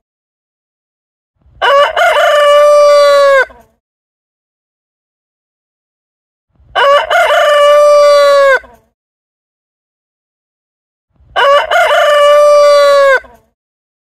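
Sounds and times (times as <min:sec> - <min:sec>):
rooster crowing: 0:01.6 - 0:03.6, 0:06.8 - 0:08.8, 0:11.4 - 0:13.4.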